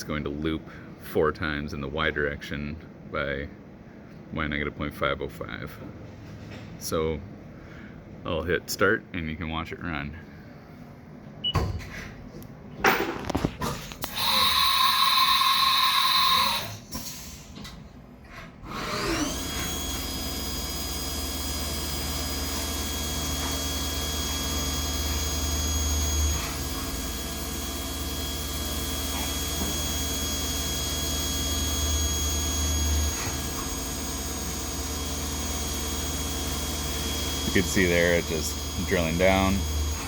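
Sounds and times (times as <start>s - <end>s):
loud machine noise: 14.0s - 16.8s, 18.6s - 40.0s
spindle whine: 19.2s - 40.0s.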